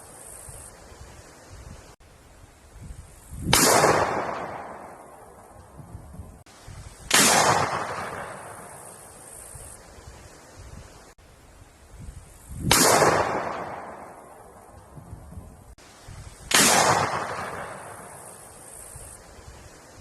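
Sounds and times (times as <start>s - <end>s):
gunshots with echo: 3.5s - 5.1s, 7.1s - 8.8s, 12.7s - 14.3s, 16.5s - 18.3s.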